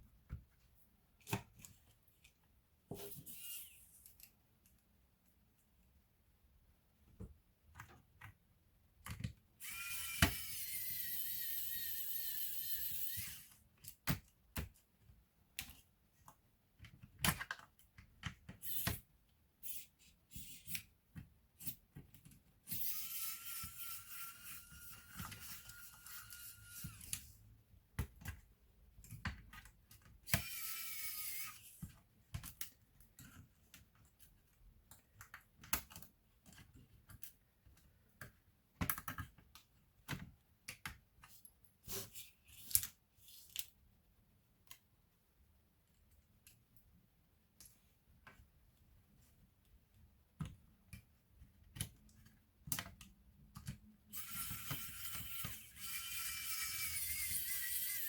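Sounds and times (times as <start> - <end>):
electric screwdriver whirring: 3.2 - 4.0, 9.6 - 13.6, 22.7 - 27.3, 30.3 - 31.6, 54.1 - 58.0.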